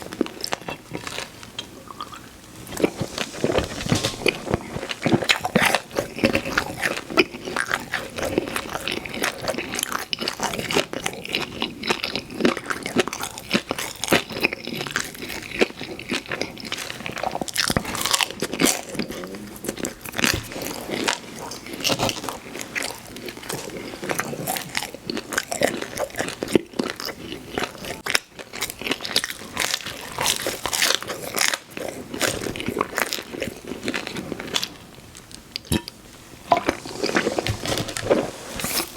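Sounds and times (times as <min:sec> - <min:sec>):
chewing pizza: 0:00.0 - 0:35.8
crust crunching: 0:00.2 - 0:07.4.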